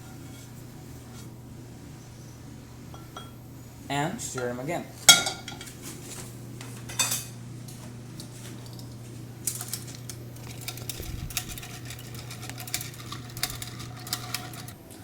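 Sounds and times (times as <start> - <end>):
steady low hum: 0.0 - 15.0
utensil scraping a bowl: 10.4 - 14.8.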